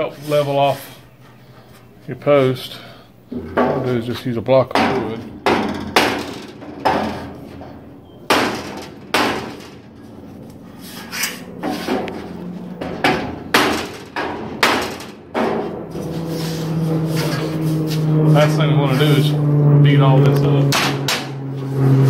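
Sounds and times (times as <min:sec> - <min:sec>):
hammer striking wood on metal: 0:04.7 - 0:07.3, 0:08.3 - 0:09.7, 0:12.8 - 0:15.7, 0:20.7 - 0:21.3.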